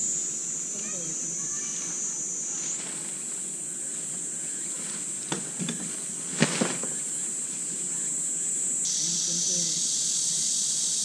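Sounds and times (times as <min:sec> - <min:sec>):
insect chorus chirring: 0:00.0 - 0:11.0.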